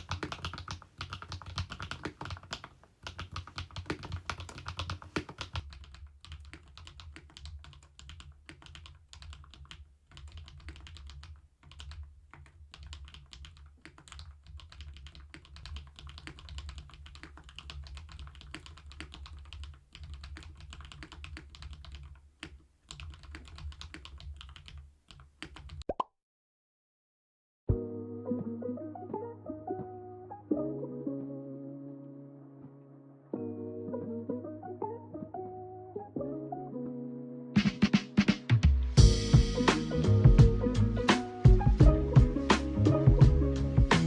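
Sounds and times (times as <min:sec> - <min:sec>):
fast typing on mechanical keyboard: 0:00.0 - 0:25.8.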